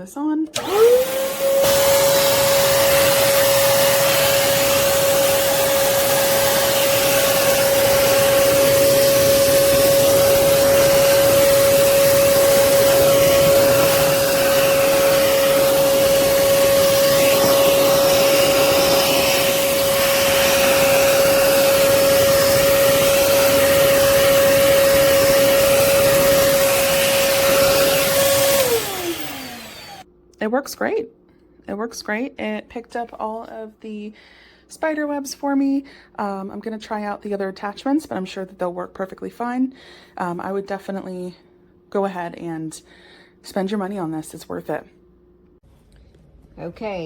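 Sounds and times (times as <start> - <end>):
vacuum cleaner running: 0.5 - 30.1.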